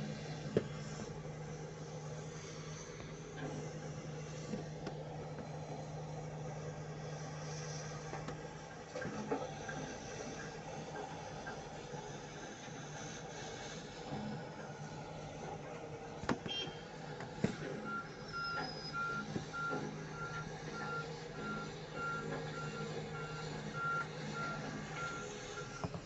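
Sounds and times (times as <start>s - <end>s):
diesel engine running: 0.0s - 26.0s
backup alarm beeping: 17.8s - 25.8s.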